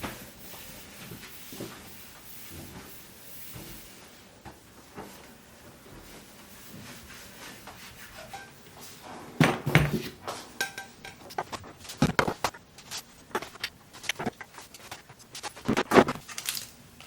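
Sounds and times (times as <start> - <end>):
dishes and cutlery clattering: 9.9 - 12.5.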